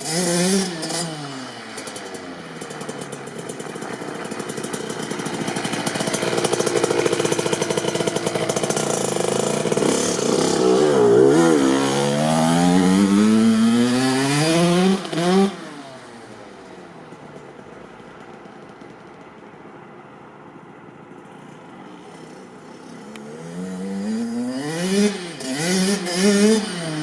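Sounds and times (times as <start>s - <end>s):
two-stroke engine revving: 0.0s - 16.4s, 22.2s - 27.0s.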